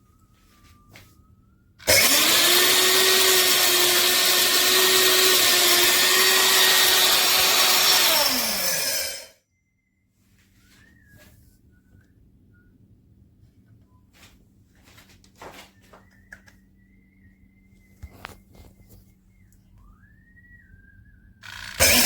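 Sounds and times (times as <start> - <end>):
grain mill motor whine: 1.8 - 9.4, 21.4 - 22.0.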